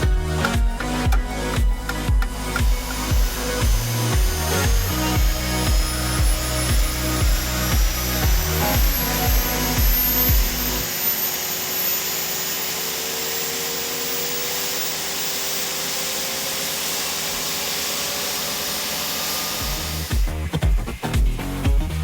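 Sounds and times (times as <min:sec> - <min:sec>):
music with a beat: 0:00.0 - 0:10.9, 0:19.6 - 0:22.0
helicopter turbine rushing: 0:00.0 - 0:20.4.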